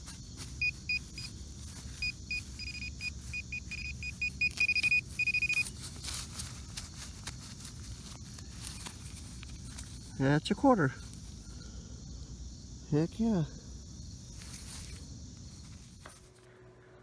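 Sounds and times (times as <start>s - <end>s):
metal detector beeping: 0.4s - 6.2s
faint clicks and scrapes: 4.4s - 10.2s.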